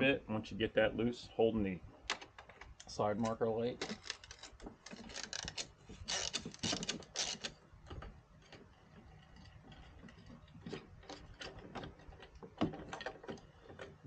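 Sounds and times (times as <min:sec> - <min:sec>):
hand ratchet clicking: 0:03.8 - 0:07.6.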